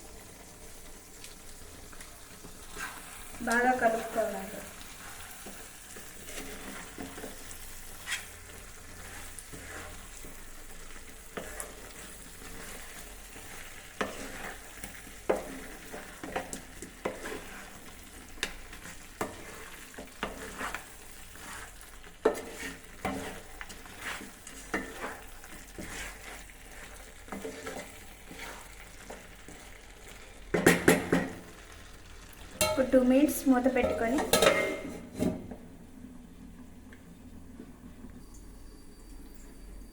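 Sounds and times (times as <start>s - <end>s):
food sizzling in a pan: 0.0s - 35.5s
spoon scraping against pan: 2.4s - 31.4s, 32.4s - 35.6s
utensil clatter: 32.6s - 35.4s.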